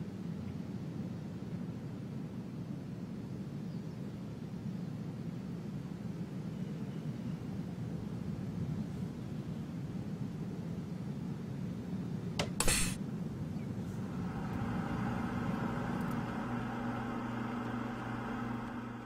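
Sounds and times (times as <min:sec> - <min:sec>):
refrigeration unit humming: 0:12.1 - 0:19.0.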